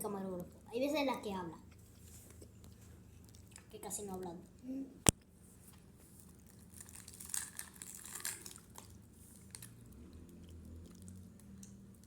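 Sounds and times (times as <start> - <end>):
person chewing candy: 6.2 - 12.0.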